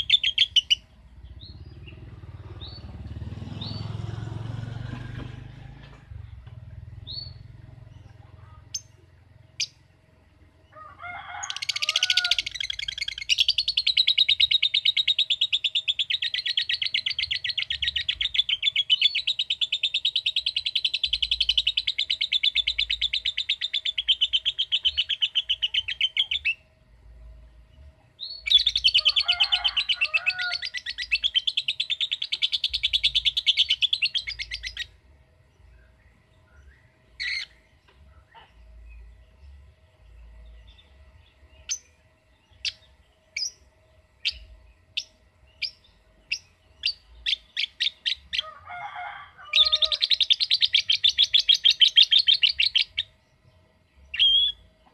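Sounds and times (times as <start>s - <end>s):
bird chattering trill: 0.0s - 2.0s, 11.5s - 26.7s, 28.2s - 35.0s, 37.2s - 37.6s, 42.5s - 48.5s, 49.5s - 53.2s, 54.1s - 54.7s
bird chirps: 0.0s - 4.0s, 6.4s - 9.9s, 11.4s - 26.7s, 27.6s - 48.5s, 49.5s - 54.9s.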